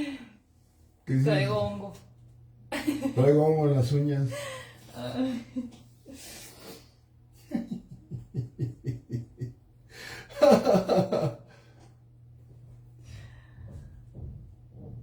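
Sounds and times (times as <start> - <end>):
person laughing: 7.5 - 9.6, 10.3 - 11.5.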